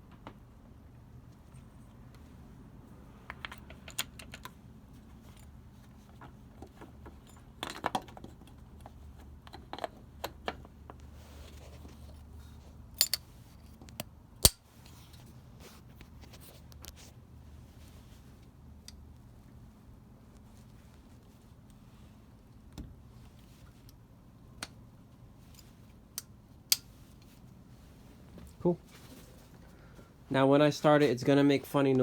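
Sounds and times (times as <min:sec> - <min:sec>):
metallic clicks of parts and tools: 0:13.0 - 0:13.3.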